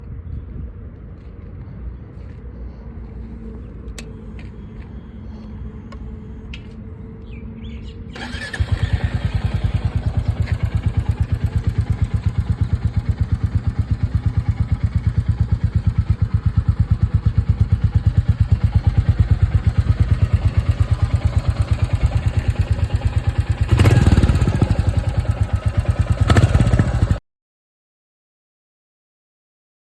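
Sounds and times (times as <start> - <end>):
motorcycle engine starting: 8.1 - 27.2
engine revving: 8.2 - 12.2, 19.0 - 27.2
motorcycle engine idling: 8.2 - 27.2.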